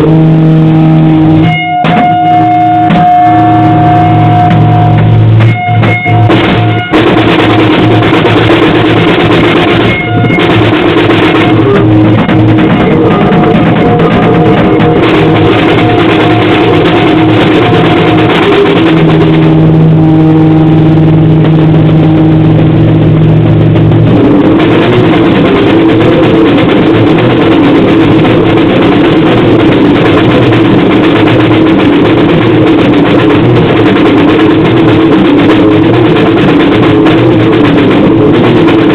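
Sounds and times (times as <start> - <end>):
distorted grindcore noise music: 0.0 - 38.9.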